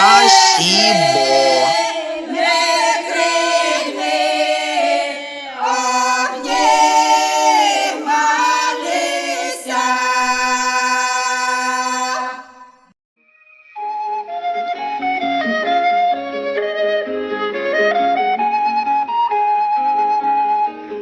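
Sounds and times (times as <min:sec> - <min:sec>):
choir singing unaccompanied: 0:00.0 - 0:12.5.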